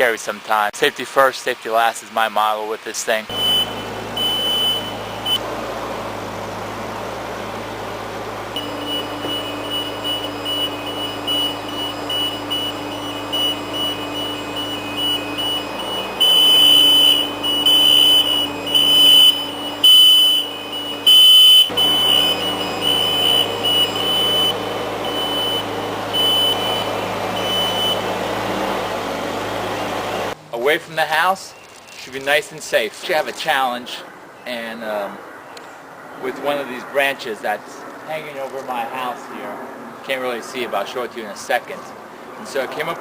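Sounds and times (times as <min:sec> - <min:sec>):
high-pitched alarm beeping: 0:03.3 - 0:05.4, 0:08.6 - 0:28.1
lift engine running: 0:03.3 - 0:30.4.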